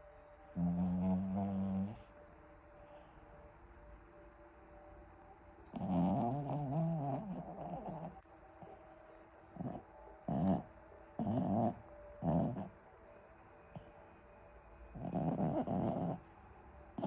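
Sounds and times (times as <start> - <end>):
pet snoring: 0.5 - 2.2, 5.7 - 8.2, 9.6 - 12.8, 14.9 - 16.2.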